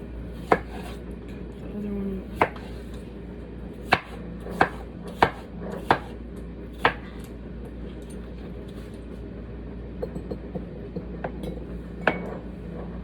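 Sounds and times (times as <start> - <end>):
knife chopping on cutting board: 0.4 - 1.0, 2.4 - 2.8, 3.8 - 6.2, 6.8 - 7.1.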